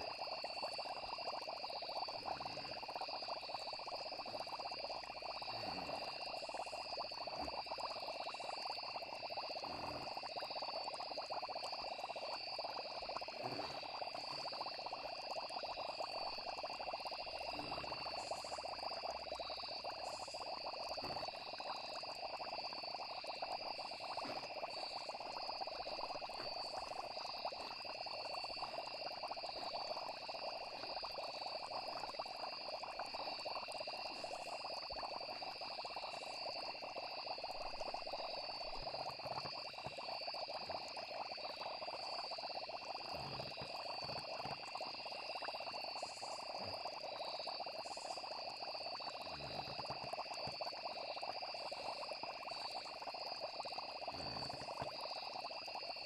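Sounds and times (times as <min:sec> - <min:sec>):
frogs chorus: 0:00.0 - 0:56.0
insects trilling: 0:00.0 - 0:56.0.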